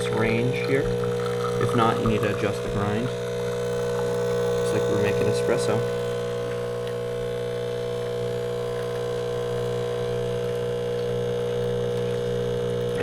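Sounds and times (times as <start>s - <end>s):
espresso machine pump humming: 0.0s - 13.0s.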